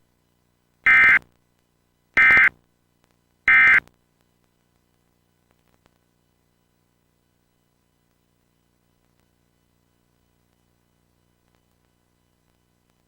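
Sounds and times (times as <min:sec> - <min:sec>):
harsh digital data bursts: 0:00.9 - 0:01.2, 0:02.2 - 0:02.5, 0:03.5 - 0:03.8.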